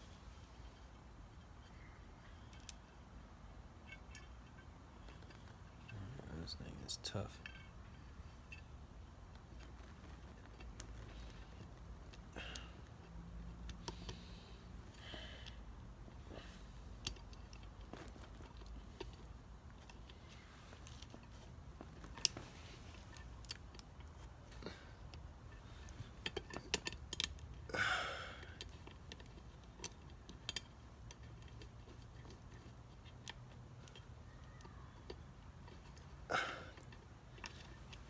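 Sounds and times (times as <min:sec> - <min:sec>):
faint steady hum: 0:00.0 - 0:38.0
metallic clicks of small parts: 0:00.7 - 0:03.0, 0:16.9 - 0:24.4, 0:25.0 - 0:27.7, 0:28.4 - 0:38.0.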